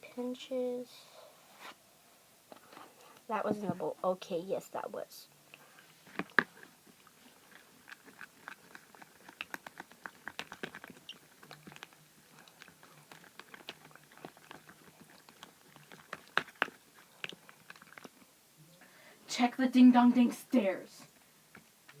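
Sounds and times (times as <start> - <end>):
sticky slime squishes: 5.5 - 18.3.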